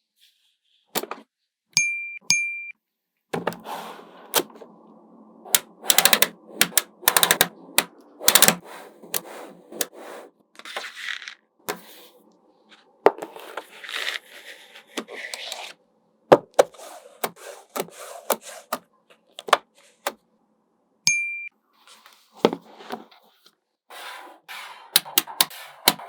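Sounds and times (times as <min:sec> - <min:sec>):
magnetic balls clicking together: 0:05.5 - 0:08.6.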